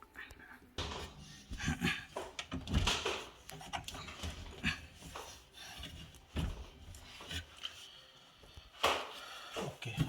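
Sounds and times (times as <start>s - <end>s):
dishwasher knocks and clunks: 2.3s - 3.4s.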